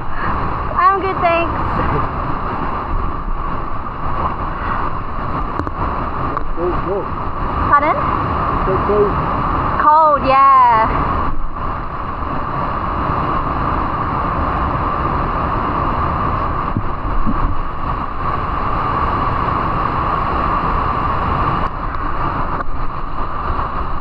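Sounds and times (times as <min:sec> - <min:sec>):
waterfall rushing: 0:00.0 - 0:10.3.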